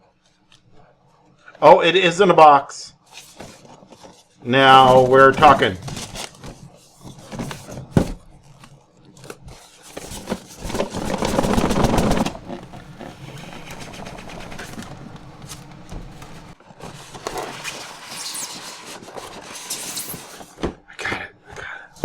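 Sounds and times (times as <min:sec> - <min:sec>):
cardboard packaging rustling: 0:03.0 - 0:20.6.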